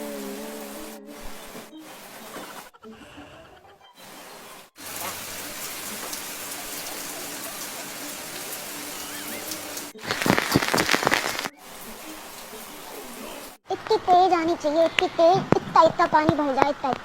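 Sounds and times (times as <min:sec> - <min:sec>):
heavy rain pattering close by: 0:00.0 - 0:02.6, 0:04.1 - 0:13.6
rain falling: 0:00.0 - 0:02.7, 0:04.0 - 0:13.6.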